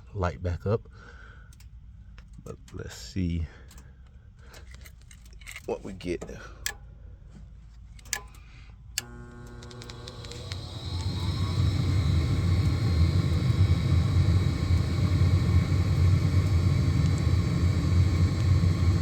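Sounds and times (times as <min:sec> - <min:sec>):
furnace low rumble: 0:00.0 - 0:19.0
furnace motor whine: 0:09.0 - 0:19.0.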